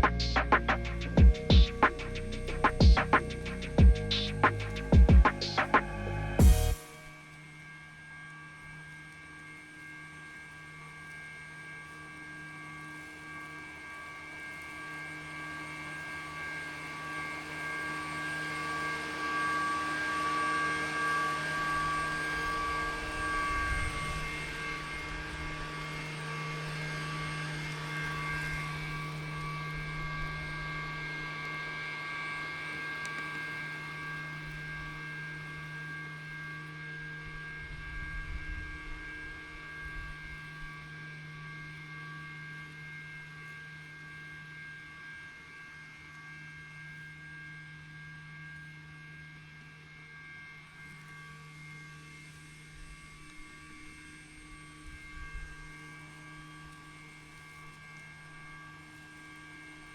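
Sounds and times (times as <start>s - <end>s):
robot lawn mower humming: 0.0s - 7.0s.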